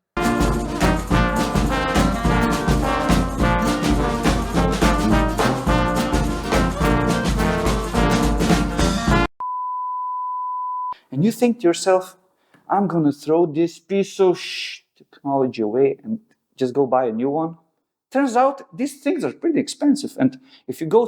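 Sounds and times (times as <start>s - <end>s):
brass music with driving beat: 0.2s - 9.3s
high-pitched beep tone: 9.4s - 11.0s.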